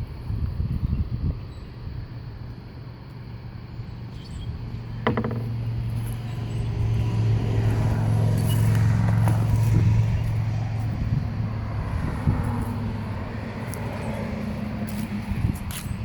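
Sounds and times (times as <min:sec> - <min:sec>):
low mechanical hum: 0:00.0 - 0:16.0
sharp knock: 0:05.0 - 0:05.6.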